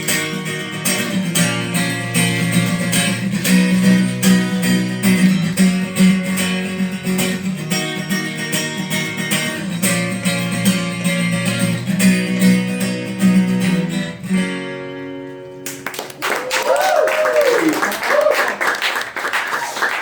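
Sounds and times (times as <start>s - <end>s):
guitar strumming: 0.0s - 15.9s.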